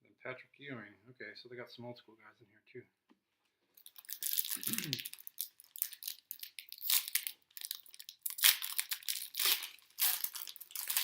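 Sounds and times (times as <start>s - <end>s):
foil wrapper crinkling and tearing: 3.8s - 11.0s.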